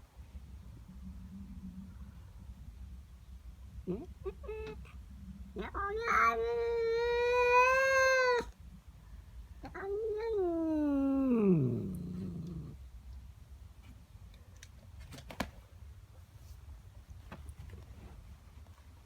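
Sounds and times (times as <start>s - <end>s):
cat yowling: 3.9s - 4.9s, 5.6s - 8.6s, 9.6s - 12.8s.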